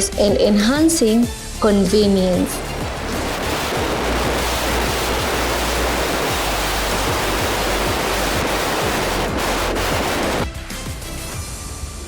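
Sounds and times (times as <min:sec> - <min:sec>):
background music: 0:00.0 - 0:12.0
loud hissing rush: 0:01.9 - 0:10.5.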